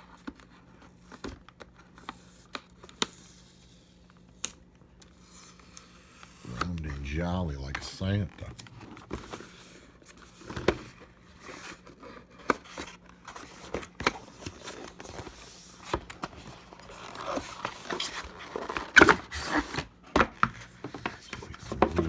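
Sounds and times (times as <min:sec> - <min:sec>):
cardboard and plastic packaging handled: 0:11.4 - 0:21.0.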